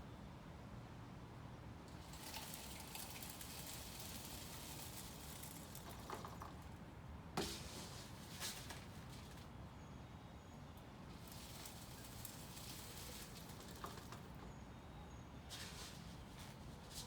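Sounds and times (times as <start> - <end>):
seeds ticking on feeder: 1.9 - 6.7, 11.1 - 14.5
birdseed pouring: 1.9 - 6.8, 11.1 - 14.5, 15.5 - 17.0.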